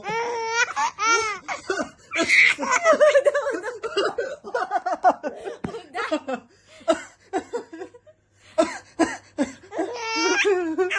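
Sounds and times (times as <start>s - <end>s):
small child laughing: 0.0s - 3.3s, 9.8s - 10.9s.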